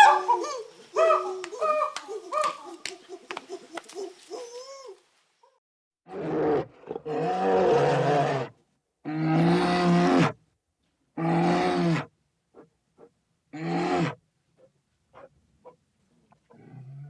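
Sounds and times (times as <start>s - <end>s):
big cat roaring: 6.1s - 10.4s, 11.2s - 12.1s, 13.6s - 14.2s.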